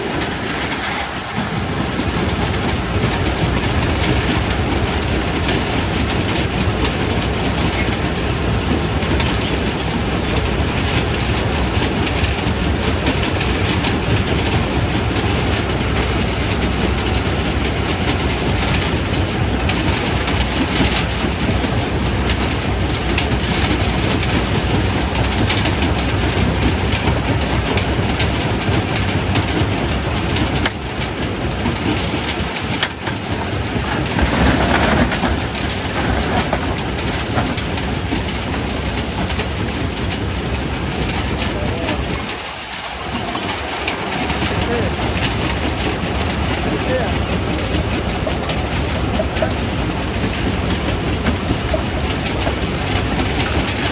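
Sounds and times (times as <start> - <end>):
rock crusher rumbling: 27.4 - 53.9.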